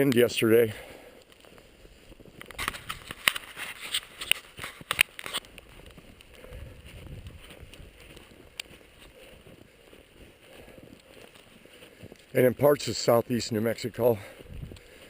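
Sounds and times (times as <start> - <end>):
footsteps crunching in snow: 0.0 - 15.0
faint outdoor hush: 0.2 - 15.0
wind rumble on microphone: 5.5 - 8.7, 14.4 - 14.9.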